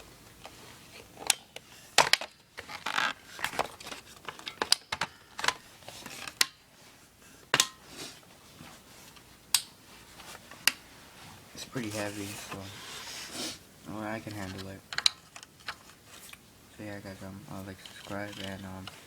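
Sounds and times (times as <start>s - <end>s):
plastic gun clicks and knocks: 1.2s - 5.6s, 7.5s - 7.8s.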